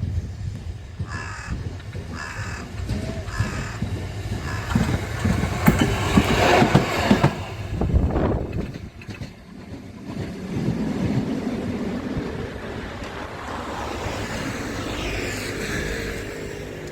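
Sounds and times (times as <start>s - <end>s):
rail vehicle rumbling: 0.0s - 16.9s
rapid knocks of rail wheels: 0.5s - 13.3s
crow cawing: 1.0s - 4.9s.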